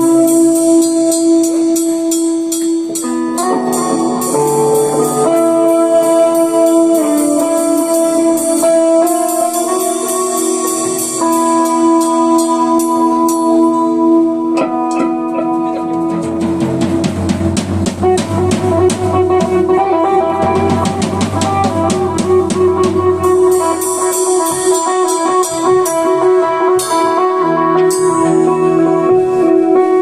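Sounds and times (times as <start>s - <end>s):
drum kit: 0.0s - 30.0s
guitar: 0.0s - 30.0s
bass line: 3.0s - 30.0s.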